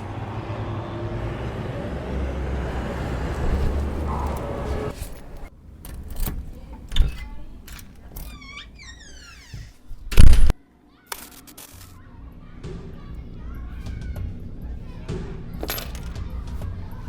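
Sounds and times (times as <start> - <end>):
car engine rumble: 1.6 - 7.6.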